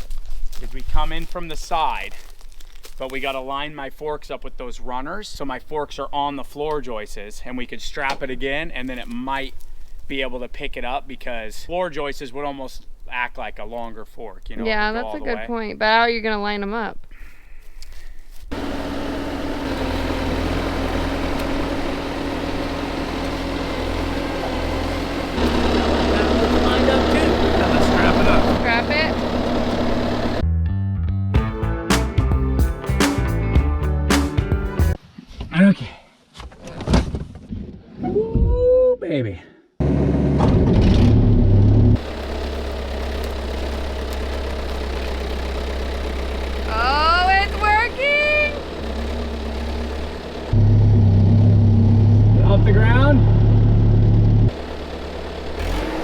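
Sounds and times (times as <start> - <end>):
diesel engine running: 18.5 - 30.4, 39.8 - 56.0.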